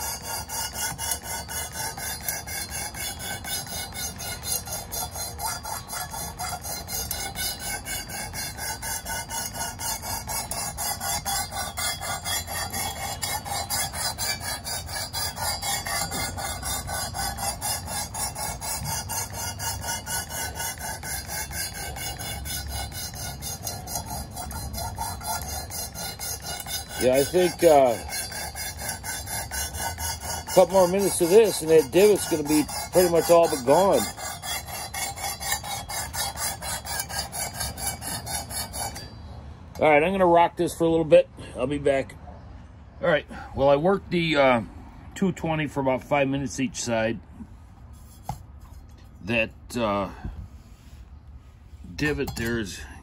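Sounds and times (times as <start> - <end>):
knife sharpener rasping: 0.0 - 39.3.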